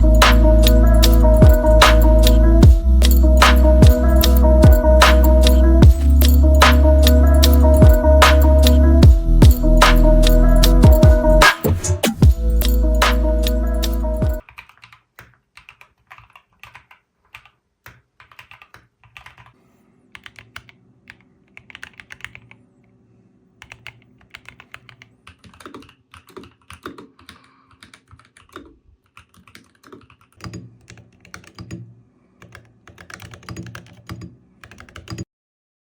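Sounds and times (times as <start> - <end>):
music: 0.0 - 14.4
mechanical keyboard typing: 12.4 - 19.6, 20.2 - 22.6, 23.6 - 35.3.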